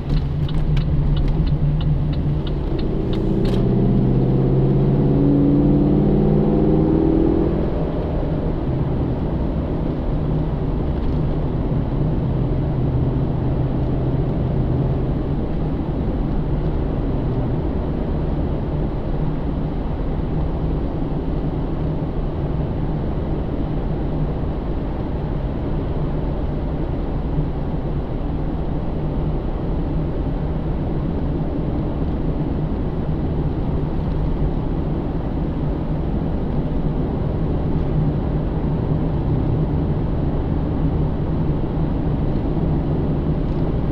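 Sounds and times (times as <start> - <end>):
car engine droning: 0.0 - 26.0
road and tyre noise: 0.0 - 43.9.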